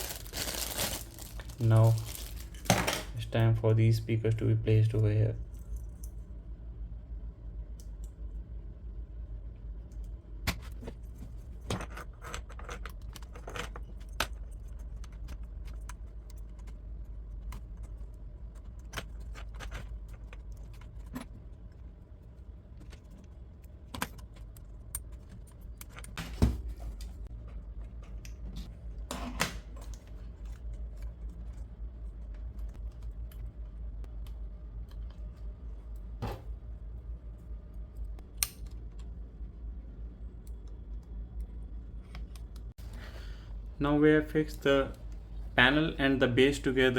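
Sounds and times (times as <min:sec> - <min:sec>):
low hum: 0:00.0 - 0:46.9
laptop parts clicking and rattling: 0:10.9 - 0:26.2.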